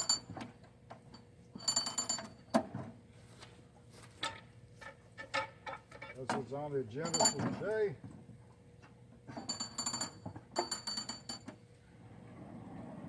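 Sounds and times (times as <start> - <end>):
metal clinks and knocks: 0.0 - 2.9, 4.2 - 8.1, 9.3 - 11.6.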